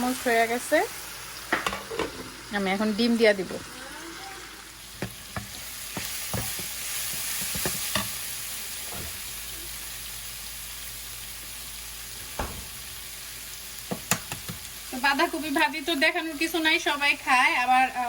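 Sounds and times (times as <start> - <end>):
food sizzling in a pan: 0.0 - 18.0
utensil knocking against pan: 5.0 - 8.1, 13.9 - 14.6.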